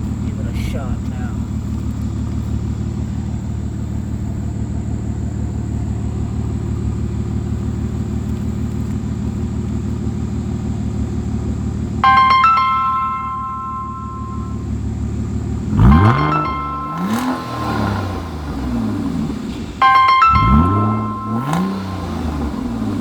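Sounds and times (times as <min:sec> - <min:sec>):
car engine idling: 0:00.0 - 0:23.0
bell-like musical chime: 0:12.0 - 0:14.7, 0:16.0 - 0:18.0, 0:19.8 - 0:22.7.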